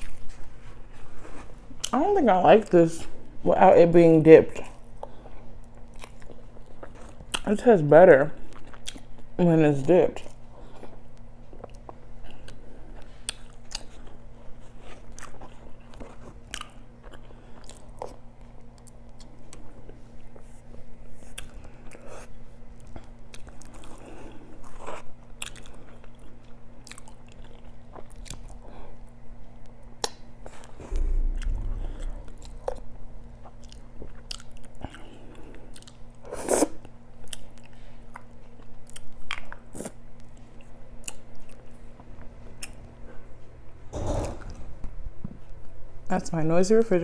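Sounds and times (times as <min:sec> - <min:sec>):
person chewing food: 0:04.6 - 0:07.5, 0:08.5 - 0:09.3, 0:10.2 - 0:20.5, 0:21.2 - 0:28.7, 0:33.5 - 0:41.8
refrigerator humming: 0:09.4 - 0:36.3
low rumble: 0:30.8 - 0:33.5, 0:44.0 - 0:45.6.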